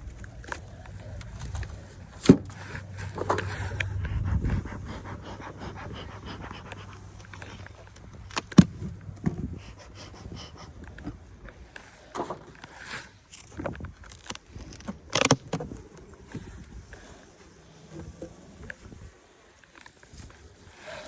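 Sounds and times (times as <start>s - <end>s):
person breathing heavily: 0.0s - 7.9s, 20.6s - 21.0s.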